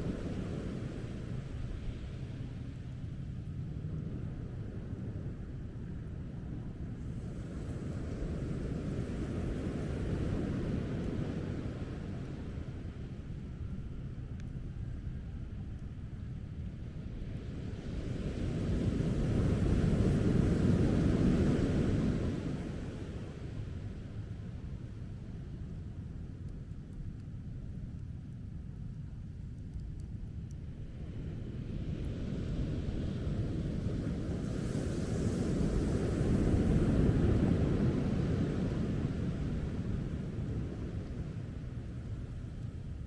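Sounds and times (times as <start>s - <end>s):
wind buffeting the microphone: 0.0s - 43.0s
surf washing: 17.8s - 23.8s, 31.6s - 42.6s.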